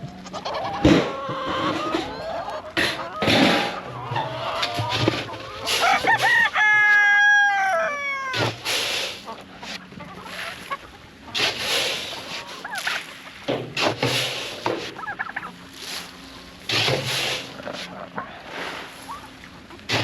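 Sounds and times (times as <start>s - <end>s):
hens clucking: 0.0s - 20.0s
rooster crowing: 0.4s - 8.5s
rustling noise: 2.8s - 6.5s.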